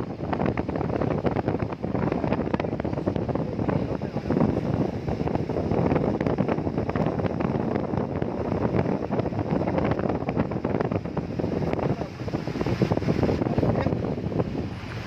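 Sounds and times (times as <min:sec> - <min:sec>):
heavy rain falling: 0:00.0 - 0:15.0
wind buffeting microphone: 0:00.0 - 0:15.0.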